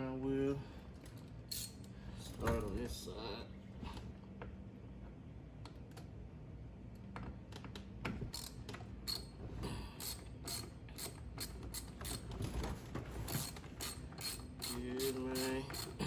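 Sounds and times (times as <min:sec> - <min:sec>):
hand ratchet clicking: 0:01.5 - 0:01.9, 0:08.3 - 0:09.3, 0:09.9 - 0:12.3, 0:13.3 - 0:16.0.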